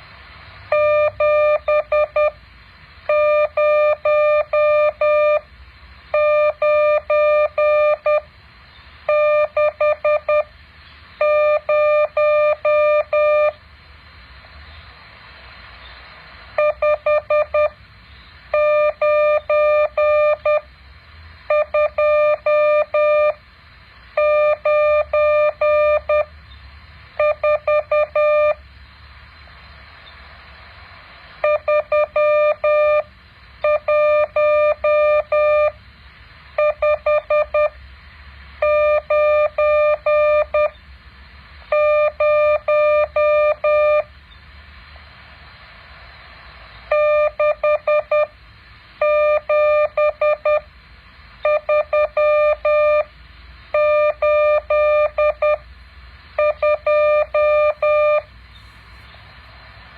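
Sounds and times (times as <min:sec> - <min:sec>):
faint hum and hiss: 0:00.0 - 0:59.9
morse code beeps: 0:00.7 - 0:02.4, 0:03.1 - 0:05.4, 0:06.2 - 0:08.3, 0:09.1 - 0:10.5, 0:11.2 - 0:13.6, 0:16.6 - 0:17.8, 0:18.5 - 0:20.6, 0:21.5 - 0:23.4, 0:24.2 - 0:26.3, 0:27.2 - 0:28.6, 0:31.4 - 0:35.8, 0:36.6 - 0:37.8, 0:38.6 - 0:40.7, 0:41.7 - 0:44.1, 0:46.9 - 0:48.3, 0:49.0 - 0:50.7, 0:51.4 - 0:53.1, 0:53.7 - 0:55.6, 0:56.4 - 0:58.3.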